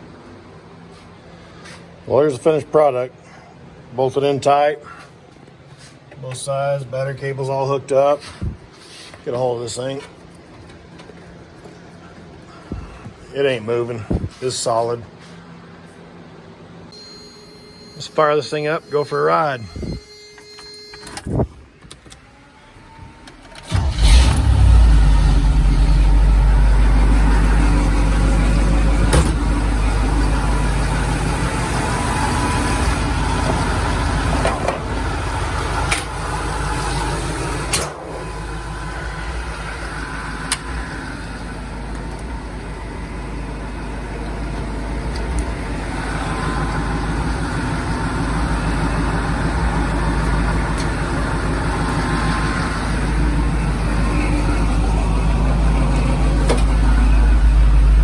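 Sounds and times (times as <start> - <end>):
pickup truck engine starting: 22.2 - 58.0.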